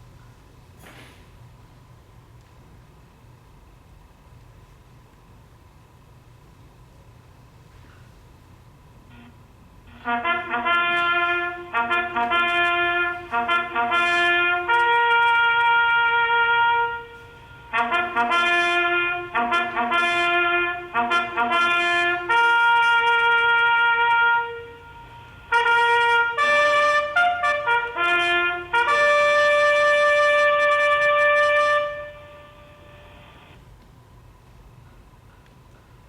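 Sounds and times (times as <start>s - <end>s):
solo trumpet bugle call: 9.1s - 33.6s.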